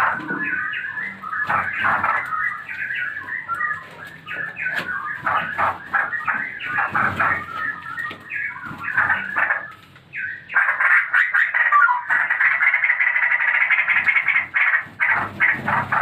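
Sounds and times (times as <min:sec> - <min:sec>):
bird chicks chirping: 0:00.0 - 0:16.0.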